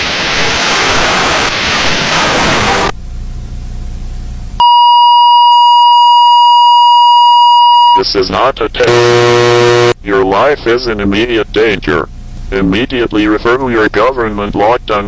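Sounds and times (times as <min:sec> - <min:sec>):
loud static hiss: 0:00.0 - 0:04.6, 0:08.0 - 0:15.0
low hum: 0:08.6 - 0:13.6
emergency alert attention tone: 0:08.8 - 0:10.0.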